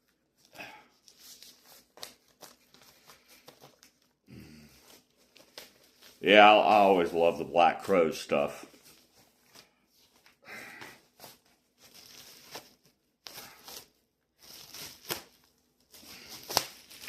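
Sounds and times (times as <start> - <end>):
plastic shrink wrap tearing: 11.2 - 17.0.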